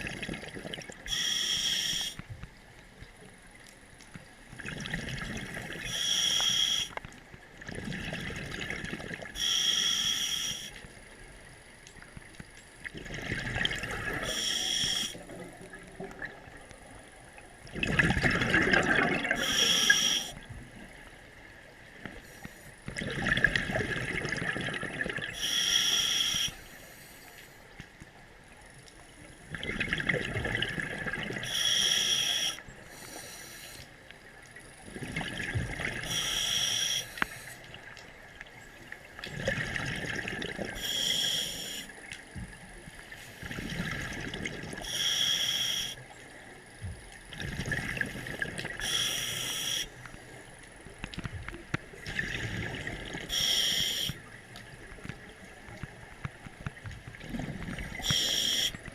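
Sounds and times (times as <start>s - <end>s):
exhaled bubbles gurgling: 0.0s - 2.2s, 4.5s - 6.9s, 7.5s - 9.9s, 12.8s - 21.0s, 22.8s - 26.5s, 29.4s - 33.2s, 34.6s - 42.7s, 43.3s - 45.1s, 46.0s - 58.9s
diver inhaling through regulator: 1.1s - 2.2s, 5.9s - 7.0s, 9.4s - 10.7s, 14.2s - 15.2s, 19.3s - 20.4s, 25.3s - 27.6s, 31.4s - 33.9s, 36.0s - 37.6s, 40.8s - 41.9s, 44.8s - 46.0s, 48.8s - 50.0s, 52.4s - 54.2s, 57.9s - 58.8s.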